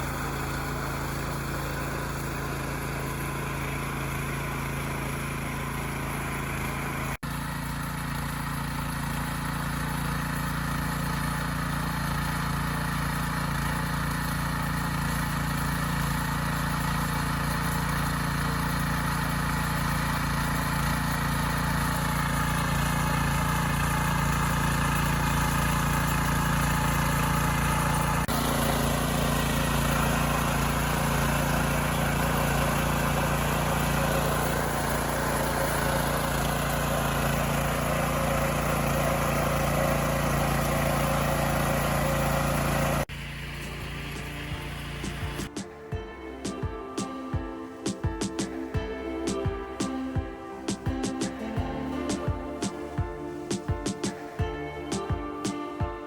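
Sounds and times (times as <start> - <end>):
rotary cutters tilling soil: 0.0 - 46.1
tractor engine running: 0.0 - 55.9.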